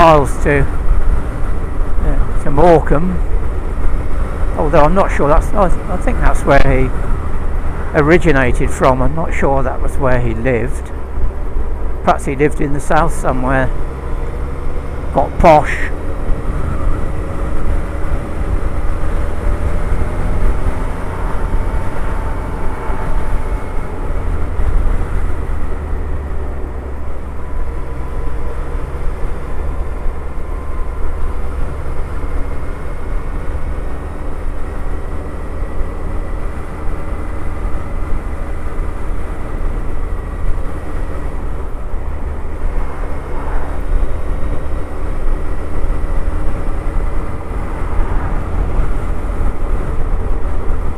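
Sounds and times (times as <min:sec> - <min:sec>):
motorcycle engine cruising: 0:00.0 - 0:50.9
wind and road noise: 0:00.0 - 0:50.9.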